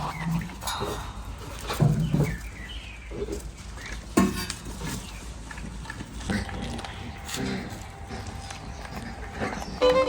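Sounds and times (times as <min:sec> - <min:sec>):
dogs gnawing on bones: 0:04.5 - 0:10.0.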